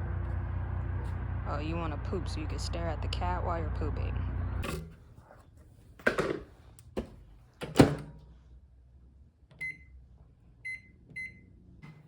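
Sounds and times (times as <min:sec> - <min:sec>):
microwave keypad beeps: 0:09.6 - 0:09.9, 0:10.6 - 0:11.5.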